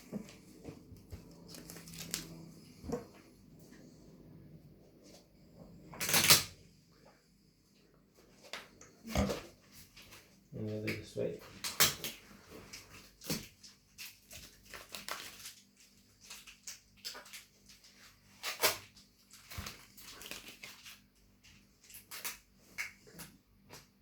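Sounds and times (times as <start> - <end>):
sticker peeling crackles: 1.1 - 2.5.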